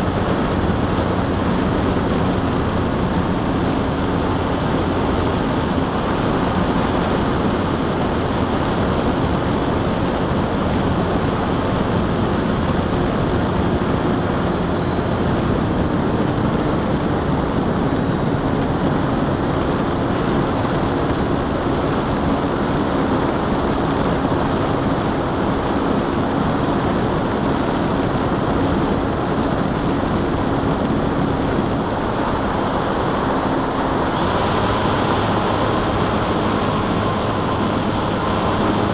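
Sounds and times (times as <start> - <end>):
model aircraft motor droning: 0.0 - 17.6, 30.8 - 38.9
wind rushing over microphone: 0.0 - 38.9.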